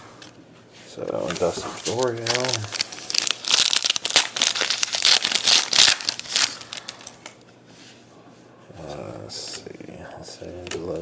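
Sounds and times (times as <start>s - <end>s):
wrapper crinkling and tearing: 1.1s - 7.3s.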